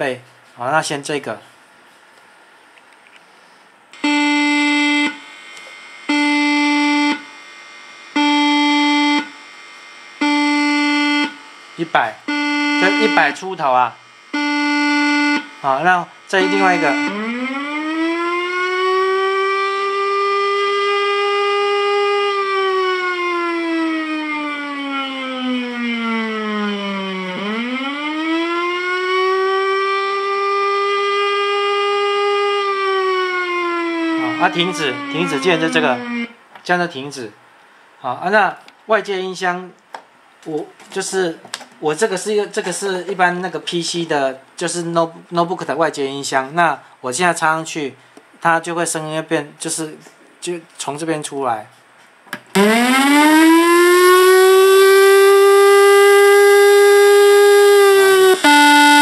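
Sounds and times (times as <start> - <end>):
buzzy alarm beeps: 4.0 - 19.0, 33.9 - 36.4, 56.0 - 59.0
electronic siren wail: 4.0 - 36.4, 52.5 - 59.0.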